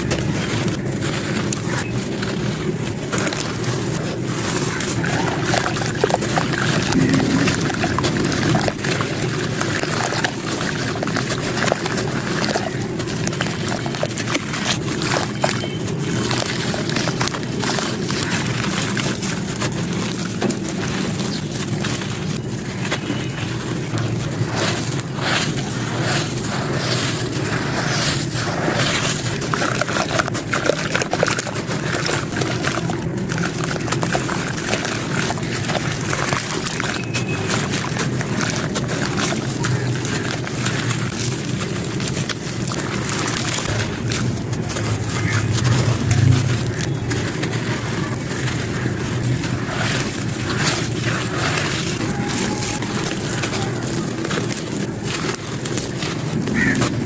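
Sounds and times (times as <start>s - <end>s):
steady low rumble: 0.0s - 15.1s, 37.8s - 57.0s
cement chunks crumbling: 27.1s - 57.0s.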